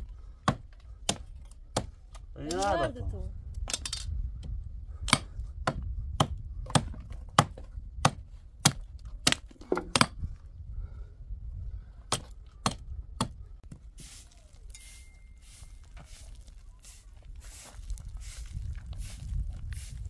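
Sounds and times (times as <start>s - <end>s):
hand tool chopping wood: 0.4s - 2.7s, 5.1s - 10.2s.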